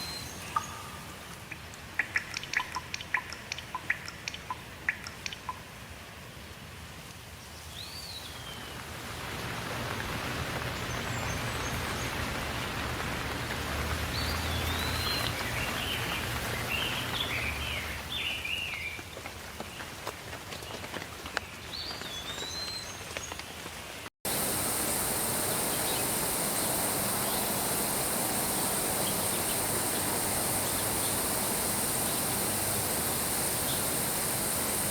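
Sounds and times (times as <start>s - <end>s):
high steady hiss: 0.0s - 2.0s, 24.0s - 34.9s
rain pattering: 1.2s - 7.8s, 8.6s - 34.9s
birds calling: 24.3s - 34.9s.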